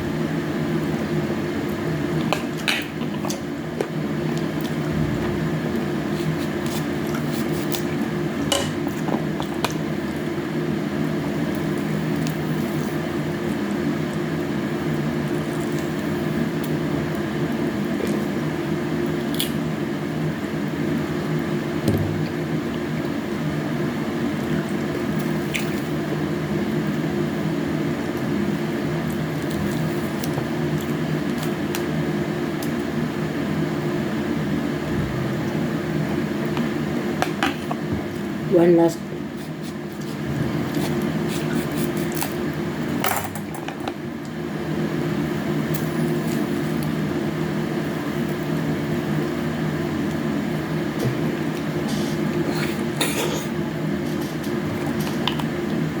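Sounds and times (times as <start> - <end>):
steady low hum: 0.0 - 19.2, 19.8 - 42.8.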